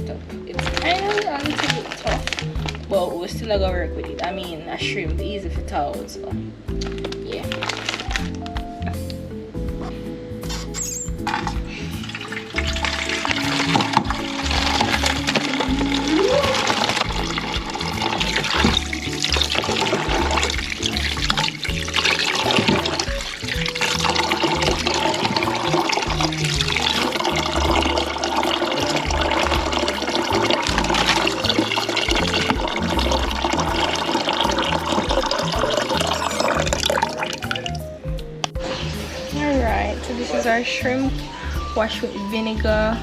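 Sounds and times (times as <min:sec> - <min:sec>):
tap water running into sink: 0:00.6 - 0:02.8, 0:11.2 - 0:37.8
music with heavy bass: 0:29.1 - 0:31.5, 0:32.1 - 0:41.3.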